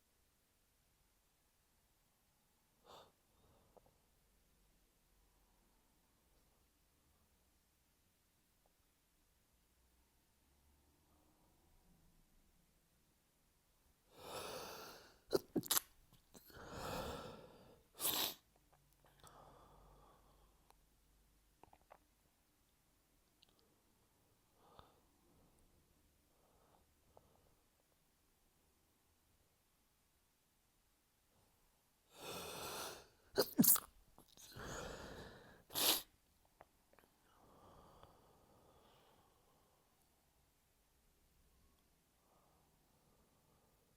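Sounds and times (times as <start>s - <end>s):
person sneezing: 15.3s - 15.9s, 18.0s - 18.4s, 32.6s - 34.8s, 35.7s - 36.1s
noisy breath in: 34.5s - 36.0s, 37.3s - 39.9s.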